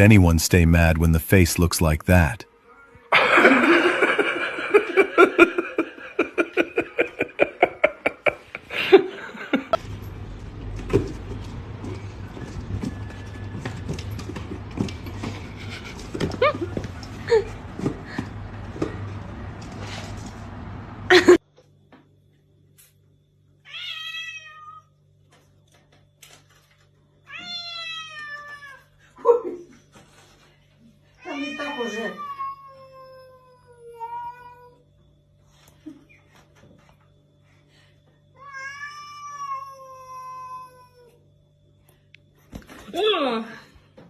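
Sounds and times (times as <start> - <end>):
person laughing: 3.1 - 9.8, 15.6 - 17.5, 21.1 - 21.4
cat meowing: 23.7 - 24.9, 27.3 - 28.8, 31.2 - 34.8, 38.4 - 41.1.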